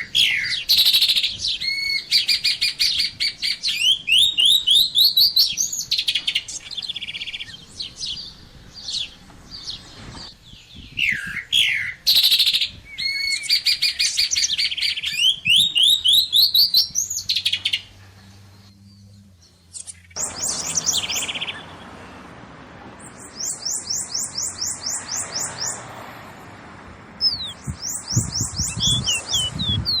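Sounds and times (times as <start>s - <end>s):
songbirds singing: 0.0s - 30.0s
bird singing falling notes: 18.9s - 22.2s, 27.1s - 30.0s.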